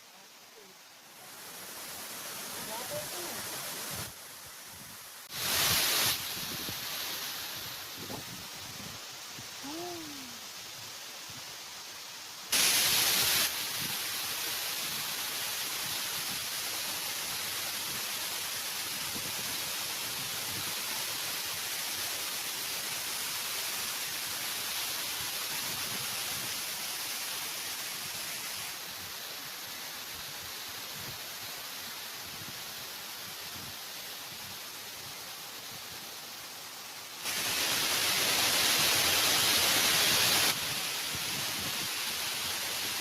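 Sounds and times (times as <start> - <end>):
waterfall roaring: 0.7 - 4.2, 9.4 - 10.5, 36.2 - 43.0.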